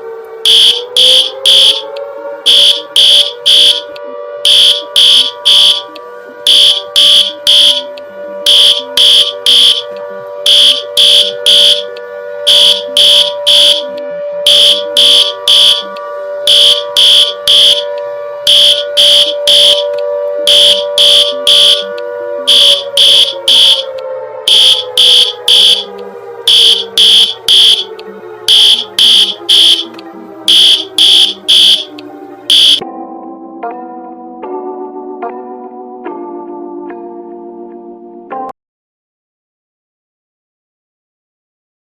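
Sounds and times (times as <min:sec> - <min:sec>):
high-pitched alarm beeps: 0:00.5 - 0:11.9, 0:12.5 - 0:21.9, 0:22.5 - 0:23.9, 0:24.5 - 0:25.9, 0:26.5 - 0:29.9, 0:30.5 - 0:32.8.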